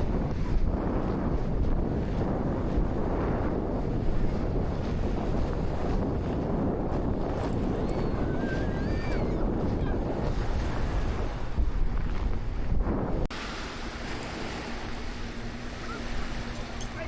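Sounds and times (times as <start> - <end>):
sea waves washing on beach: 0.0 - 17.0
wind buffeting microphone: 0.0 - 17.0.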